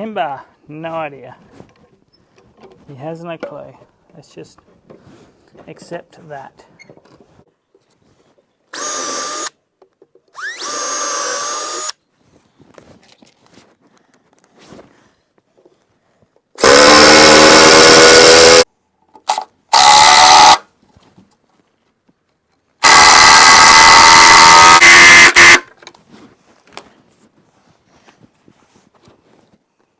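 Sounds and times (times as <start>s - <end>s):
cordless drill running: 8.8s - 9.5s, 10.4s - 12.0s, 16.6s - 18.6s, 19.7s - 20.6s, 22.8s - 25.6s
motor whine: 8.8s - 9.5s, 10.4s - 11.9s.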